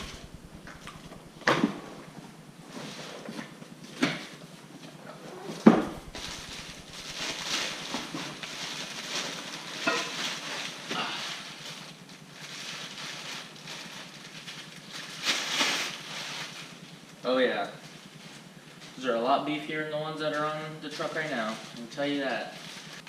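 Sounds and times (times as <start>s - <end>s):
packaging rustling: 5.3s - 17.1s, 21.0s - 23.0s.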